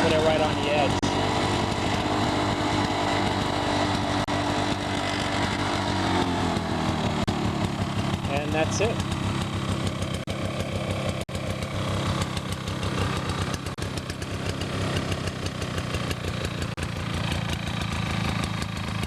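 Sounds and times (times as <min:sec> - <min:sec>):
lawnmower engine running: 0:00.0 - 0:19.0.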